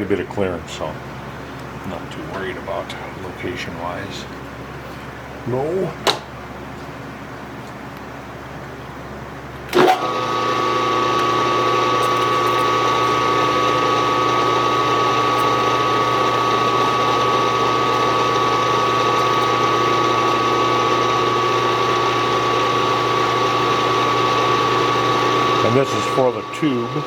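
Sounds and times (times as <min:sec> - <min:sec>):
milling machine spindle whine: 0:09.7 - 0:27.0.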